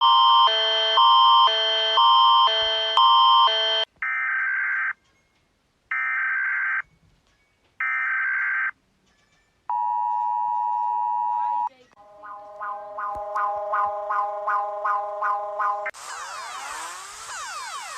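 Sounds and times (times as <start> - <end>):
two-note electronic alarm tone: 0.0 - 3.9, 9.7 - 16.7
buzzy data tone bursts: 12.0 - 17.9.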